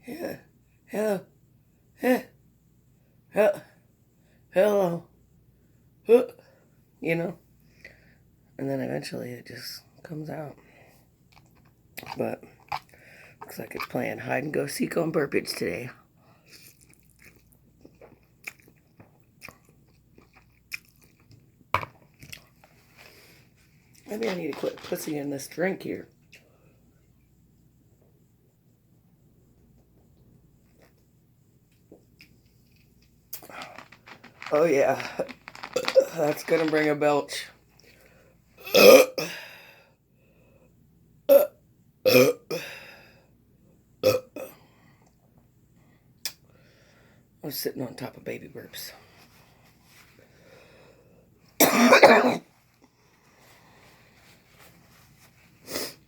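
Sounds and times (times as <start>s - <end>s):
person chewing noodles: 11.4s - 13.0s, 16.5s - 21.4s
person burping: 38.6s - 39.4s, 41.3s - 41.5s, 42.1s - 42.8s, 44.0s - 44.5s, 51.6s - 52.4s.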